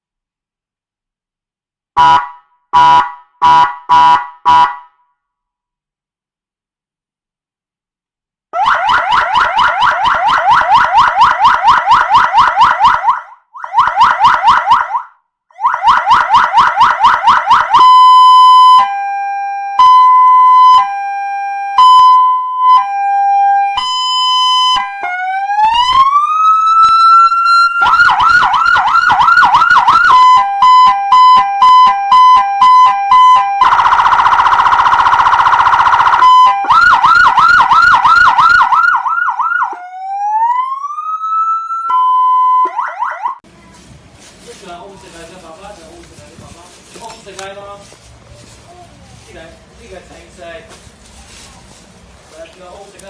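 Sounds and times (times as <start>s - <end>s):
electronic car siren: 8.6s - 43.4s.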